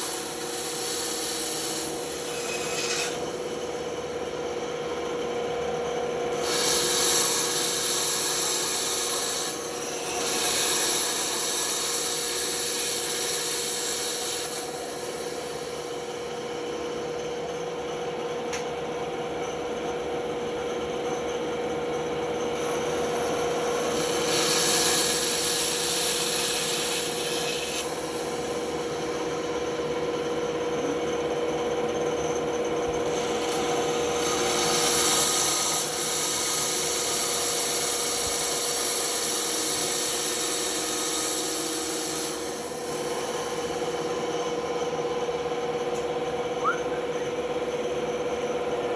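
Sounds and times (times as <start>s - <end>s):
saw blade cutting workpiece: 0.0s - 3.8s, 6.3s - 16.2s, 22.4s - 29.9s, 32.3s - 44.7s
band saw humming: 0.0s - 4.5s, 6.2s - 16.8s, 22.5s - 48.0s.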